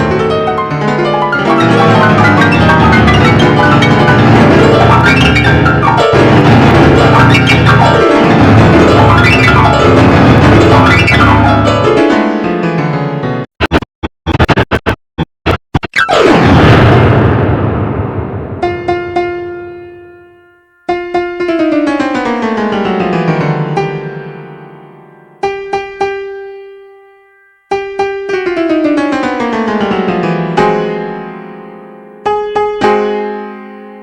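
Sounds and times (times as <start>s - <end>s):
keyboard music: 0.0s - 13.4s.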